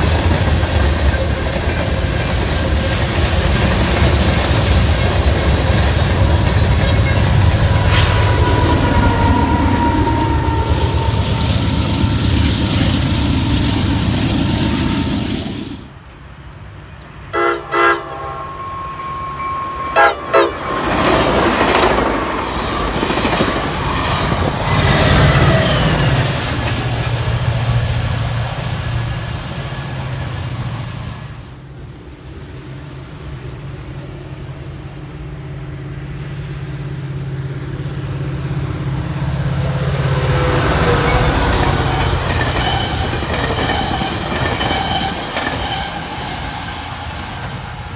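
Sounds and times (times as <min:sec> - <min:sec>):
train cars clacking over rails: 0:00.0 - 0:16.0, 0:16.9 - 0:35.5, 0:36.2 - 0:47.9
locomotive engine drone: 0:00.0 - 0:47.9
locomotive horn toots: 0:06.2 - 0:13.5, 0:17.3 - 0:23.0.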